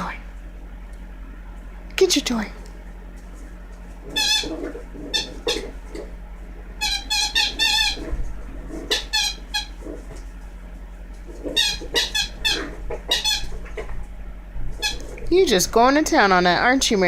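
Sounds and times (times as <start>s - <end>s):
puppy chewing and rustling: 2.6s - 6.7s.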